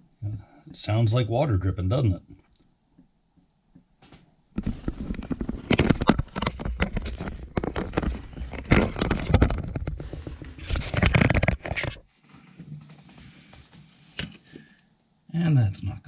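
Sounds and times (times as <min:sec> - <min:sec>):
dryer vent parts crinkling and scraping: 0:04.0 - 0:15.0.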